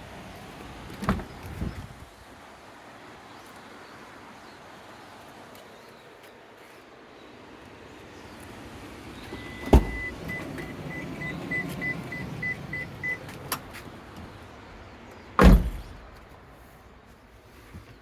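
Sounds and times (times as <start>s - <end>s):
car door thudding: 1.0s - 1.7s, 9.3s - 14.4s, 15.4s - 16.3s
warning beeps: 9.3s - 13.3s.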